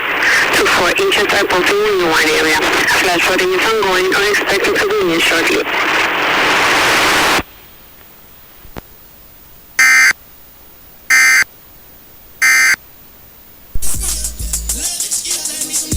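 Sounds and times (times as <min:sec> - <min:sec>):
buzzing digital data tones: 0:09.8 - 0:10.2, 0:11.1 - 0:11.5, 0:12.4 - 0:12.8
music: 0:13.8 - 0:15.9.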